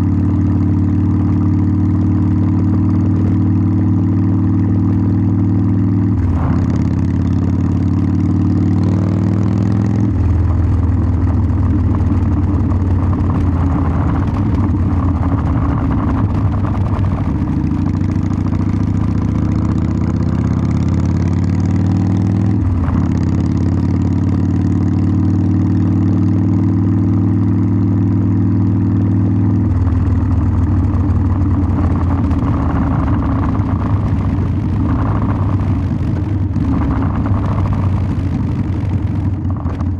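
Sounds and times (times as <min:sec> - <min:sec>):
motorcycle exhaust while riding: 0:00.0 - 0:39.9.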